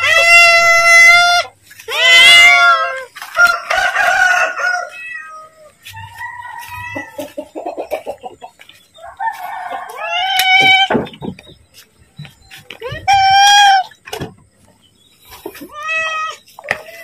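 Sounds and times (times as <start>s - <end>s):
cat meowing loudly: 0.0s - 3.1s, 4.8s - 5.5s, 9.9s - 11.0s, 12.8s - 13.9s, 15.7s - 17.0s.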